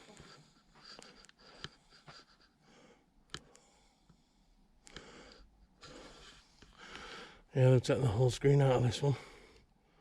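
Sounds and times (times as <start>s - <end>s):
faint clicks: 3.3s - 4.2s, 4.8s - 5.4s.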